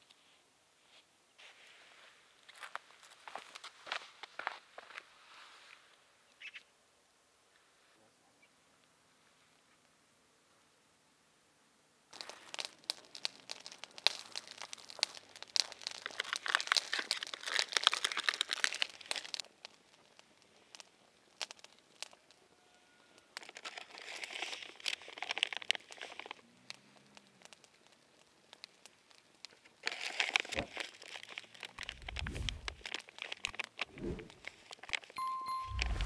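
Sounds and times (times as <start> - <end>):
crinkling handling noise: 12.1 - 22.4, 23.1 - 36.0.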